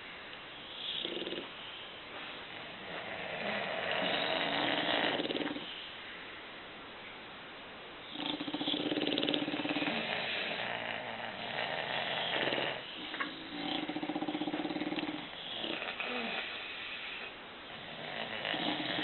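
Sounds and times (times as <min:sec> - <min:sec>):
dogs snoring: 0:00.6 - 0:01.8, 0:02.5 - 0:06.0, 0:08.0 - 0:19.0.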